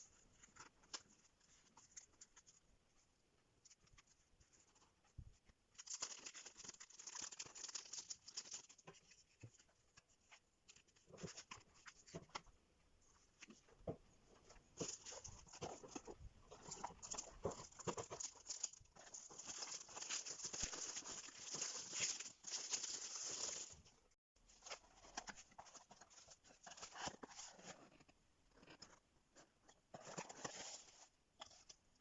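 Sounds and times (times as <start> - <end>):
paper wrapping rustling and crinkling: 3.6 - 9.7, 14.4 - 23.9, 24.5 - 29.0, 29.9 - 31.8.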